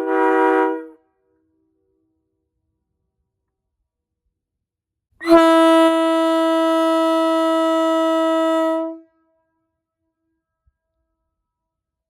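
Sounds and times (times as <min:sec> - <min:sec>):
faint air horn chord: 0:00.0 - 0:01.0, 0:05.2 - 0:09.1.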